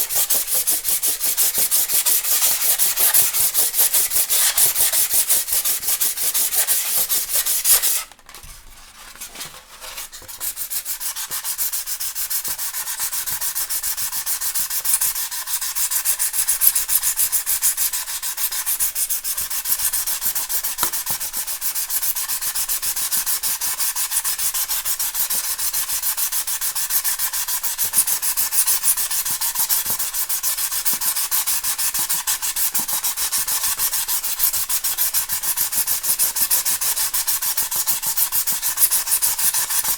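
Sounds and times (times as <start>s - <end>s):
styrofoam rubbing: 0.0s - 16.4s.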